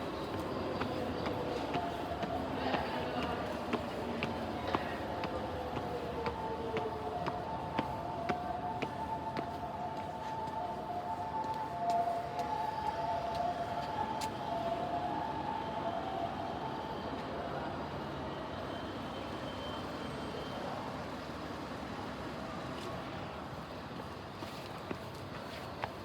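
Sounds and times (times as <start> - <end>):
road traffic noise: 0.0 - 10.6
two-tone siren: 6.0 - 20.9.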